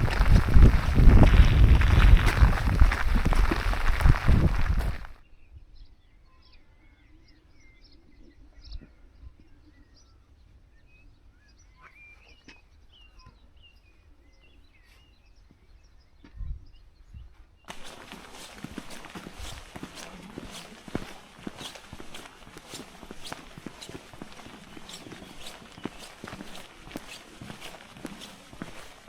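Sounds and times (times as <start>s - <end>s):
small birds chirping: 0.0s - 5.1s, 17.6s - 29.0s.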